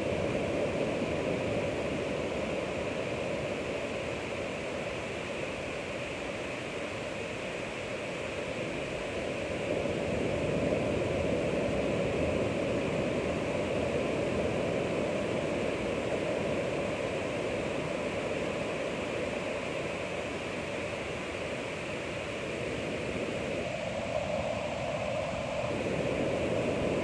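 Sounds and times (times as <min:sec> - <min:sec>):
ocean waves on shore: 0:07.4 - 0:27.0.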